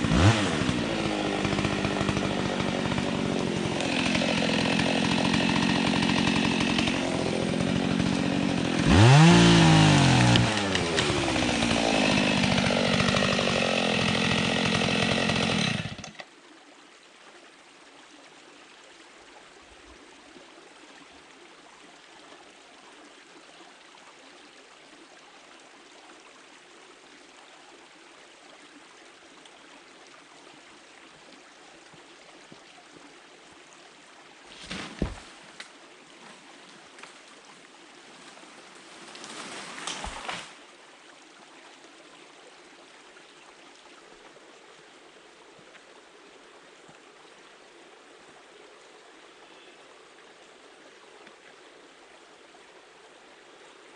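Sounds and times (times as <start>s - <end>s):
chainsaw revving: 0.0s - 16.2s
faint steady hiss: 16.2s - 53.9s.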